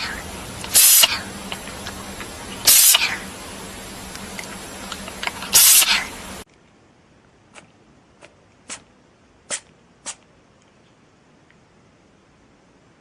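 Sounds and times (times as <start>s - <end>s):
cat sneezing: 0.7s - 1.3s, 2.7s - 3.2s, 5.5s - 6.1s, 8.6s - 8.9s, 9.5s - 10.2s.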